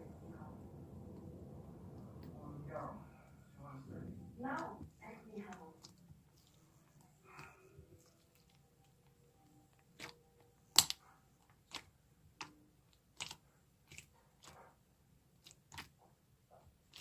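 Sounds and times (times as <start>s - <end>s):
sharp clicks and pops: 10.0s - 14.6s.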